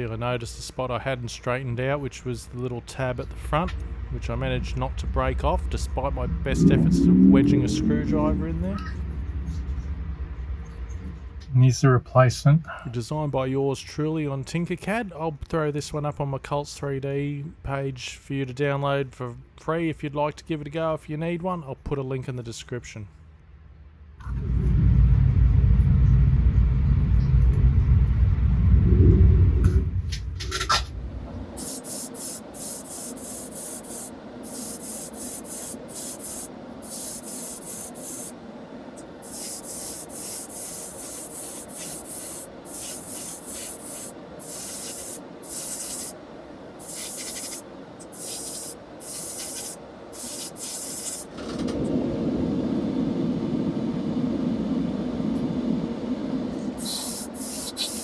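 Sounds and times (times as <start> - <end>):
low rumble: 3.2 - 11.7, 24.2 - 42.8, 51.3 - 57.2
hand sanding strokes: 31.6 - 38.3, 39.2 - 46.2.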